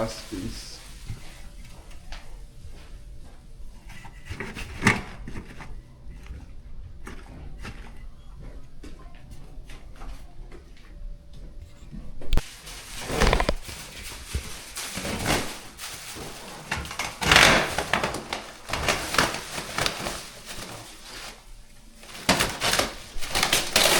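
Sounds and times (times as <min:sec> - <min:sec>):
ductwork scraping and rustling: 0:11.4 - 0:23.9.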